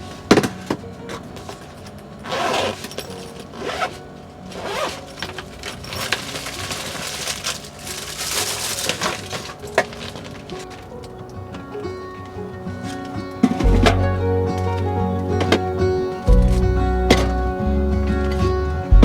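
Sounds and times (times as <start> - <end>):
rustling handling noises: 0.0 - 18.8
background music: 0.0 - 19.0.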